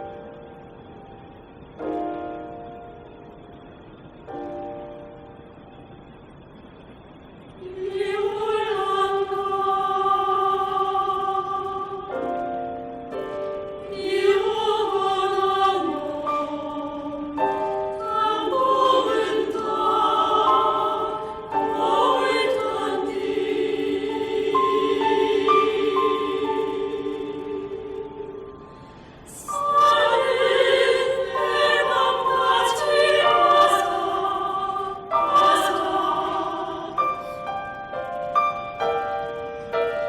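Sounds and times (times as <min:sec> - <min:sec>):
choir singing: 0:07.6 - 0:40.0
piano accompaniment: 0:29.5 - 0:40.0.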